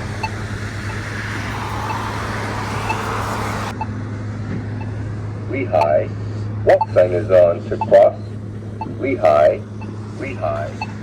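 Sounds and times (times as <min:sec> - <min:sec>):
crossing button locator tone ticking: 0:00.0 - 0:04.0, 0:04.6 - 0:11.0
car passing: 0:00.0 - 0:11.0
steady low hum: 0:04.6 - 0:11.0.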